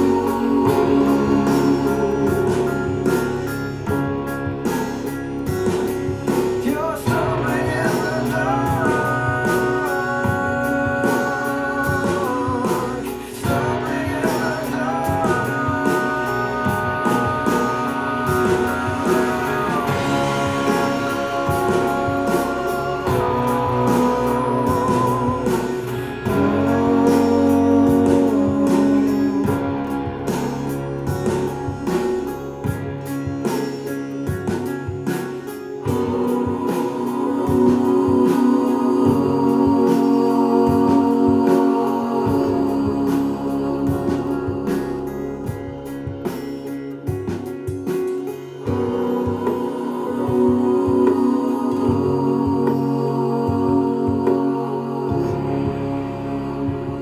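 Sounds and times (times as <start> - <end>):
guitar: 0.0 - 57.0
person singing: 0.0 - 57.0.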